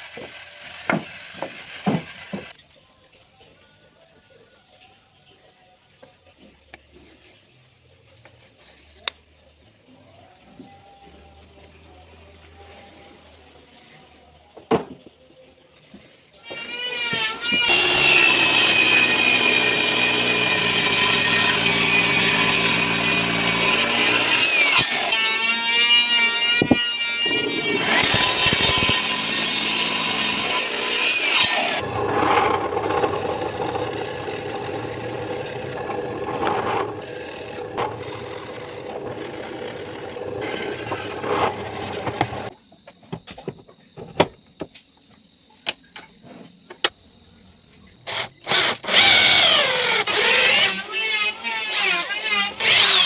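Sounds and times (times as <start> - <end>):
faint high whine: 1.3 - 16.6, 31.5 - 50.9
drum sander running: 27.4 - 42.5.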